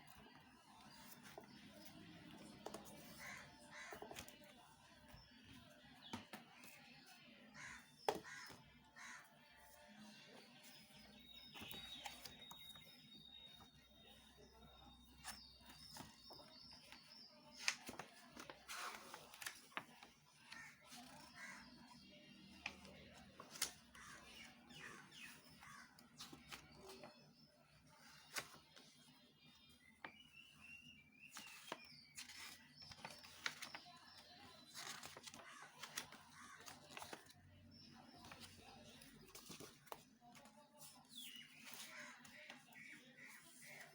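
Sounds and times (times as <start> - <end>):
birds chirping: 20.3 - 43.9.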